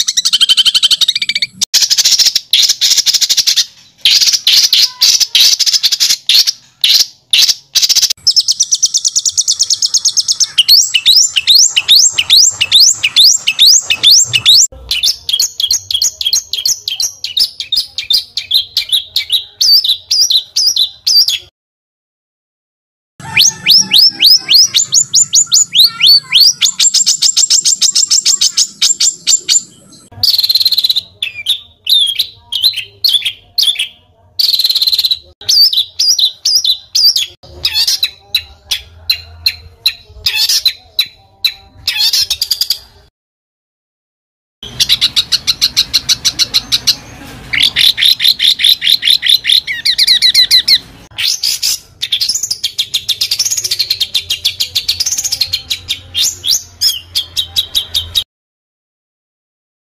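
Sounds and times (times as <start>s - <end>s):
songbird harsh trills: 0.0s - 20.8s, 23.2s - 38.2s.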